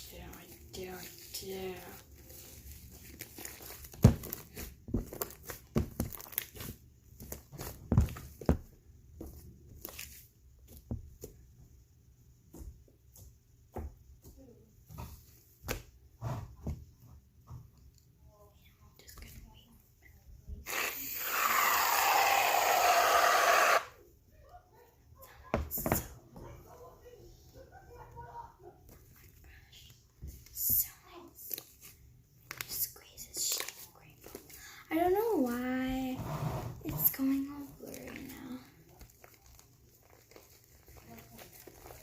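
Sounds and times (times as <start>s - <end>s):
fluffy slime squished by hand: 37.4s - 42.0s.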